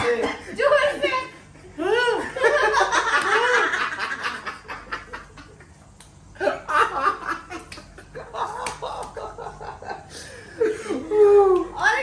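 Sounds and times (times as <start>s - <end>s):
people laughing: 1.6s - 5.8s, 6.4s - 11.5s.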